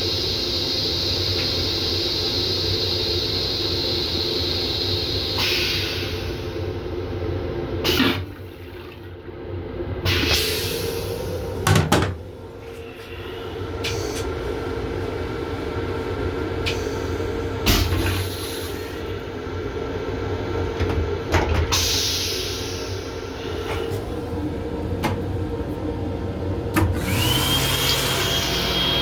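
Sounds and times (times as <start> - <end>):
railcar hum and rumble: 0.0 - 27.3
sharp clunks and knocks: 11.7 - 12.2.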